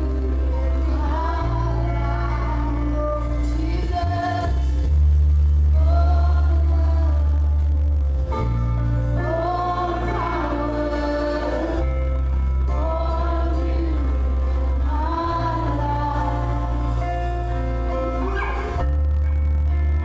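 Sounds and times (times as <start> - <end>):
group singing worship song: 0.0 - 4.6, 9.2 - 17.6
sustained low chords: 0.0 - 20.0.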